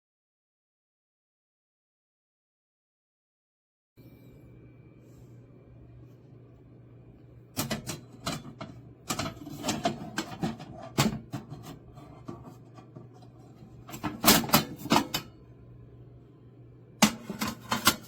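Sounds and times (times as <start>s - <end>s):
low steady hum: 4.0s - 18.0s.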